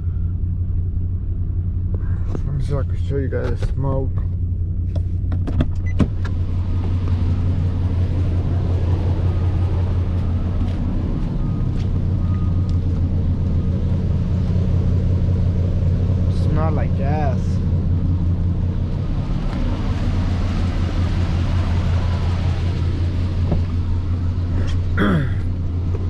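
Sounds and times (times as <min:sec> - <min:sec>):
engine idling roughly and misfiring: 0:06.3 - 0:26.0.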